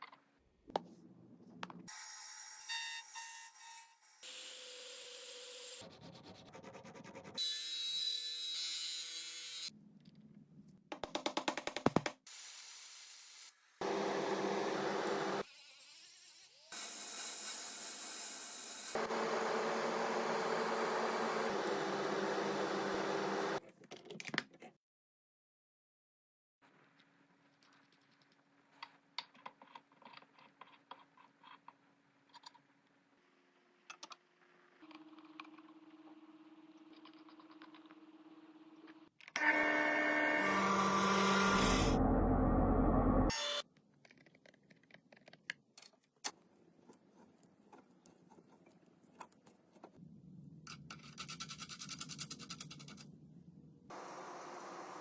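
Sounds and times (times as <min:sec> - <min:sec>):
small metal parts clicking: 0:50.7 - 0:53.1.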